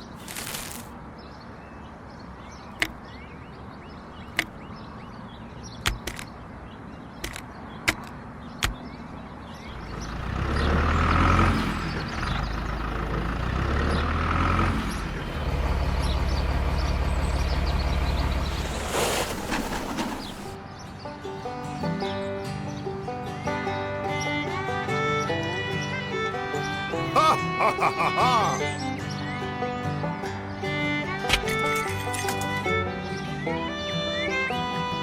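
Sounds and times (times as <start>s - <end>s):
sharp clicks: 5.8s - 6.4s, 7.2s - 8.8s.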